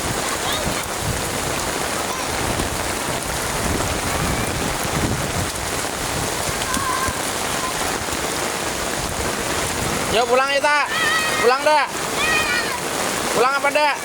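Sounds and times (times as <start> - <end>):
heavy rain hissing: 0.0 - 14.0.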